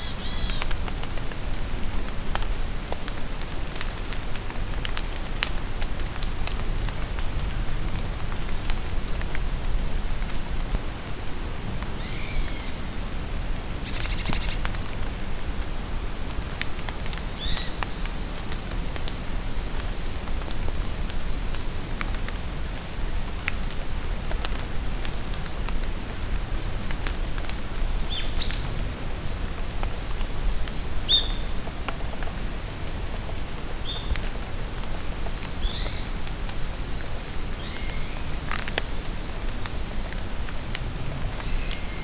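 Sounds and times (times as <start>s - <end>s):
small birds chirping: 0.0s - 0.7s
rain pattering in forest: 0.0s - 42.0s.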